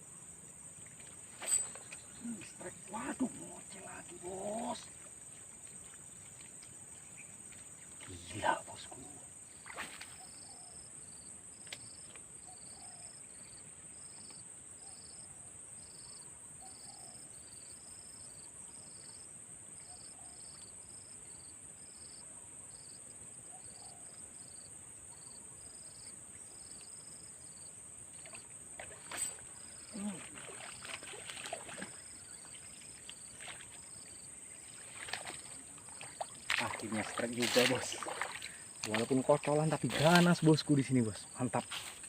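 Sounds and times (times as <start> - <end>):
short insect chirps: 0.0 - 15.2, 19.8 - 42.0
insects droning: 0.0 - 42.0
faint click: 11.6 - 12.2.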